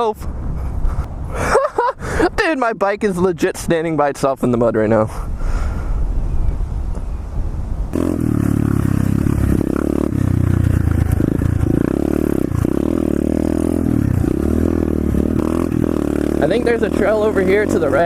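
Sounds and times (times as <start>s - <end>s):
motorbike engine revving: 7.9s - 18.0s.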